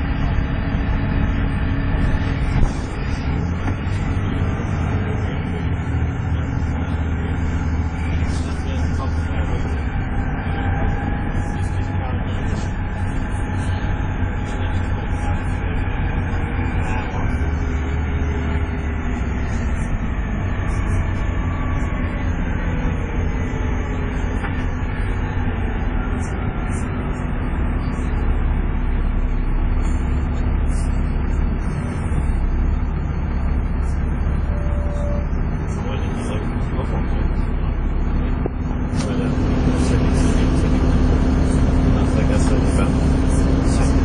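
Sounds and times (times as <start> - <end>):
bus engine droning under load: 0.0 - 44.0
faint engine whine: 0.0 - 44.0.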